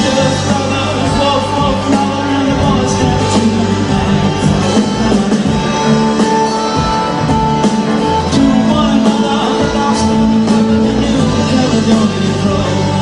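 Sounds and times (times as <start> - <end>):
electric guitar: 0.0 - 13.0
live rock band playing: 0.0 - 13.0.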